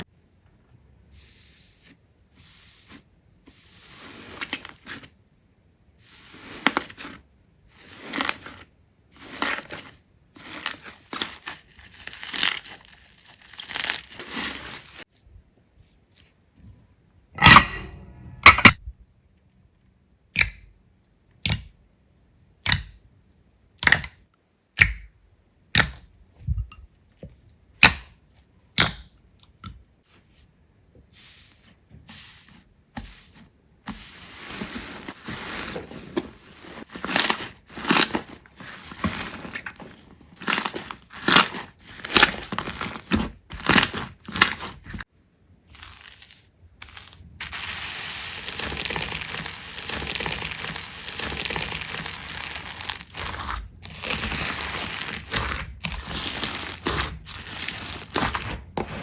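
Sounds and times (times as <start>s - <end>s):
slime crackling and crunching: 10.5s - 15.0s, 47.0s - 58.5s.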